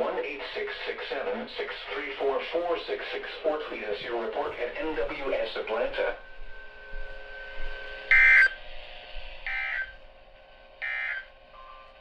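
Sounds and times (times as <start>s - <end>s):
buzzy digital tone bursts: 8.1s - 8.5s, 9.5s - 10.0s.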